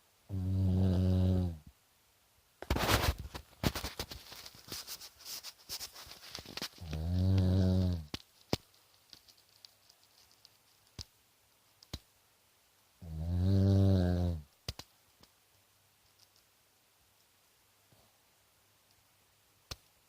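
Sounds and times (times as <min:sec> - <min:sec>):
person snoring: 0:00.3 - 0:01.6, 0:06.8 - 0:08.1, 0:13.0 - 0:14.5.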